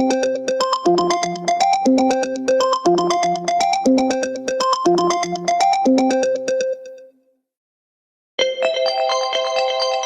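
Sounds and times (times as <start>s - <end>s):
phone ringtone bell-like notes: 8.4s - 10.0s.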